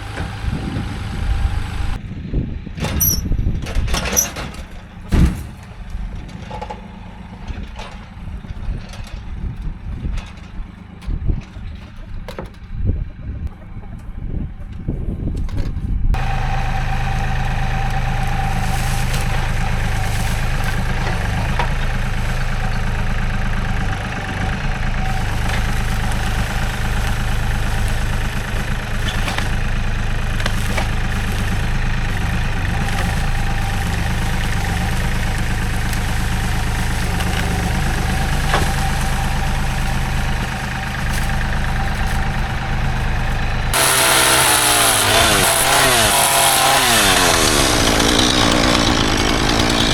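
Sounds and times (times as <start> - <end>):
engine idling: 0.0 - 49.9
harsh high engine sound: 16.2 - 49.9.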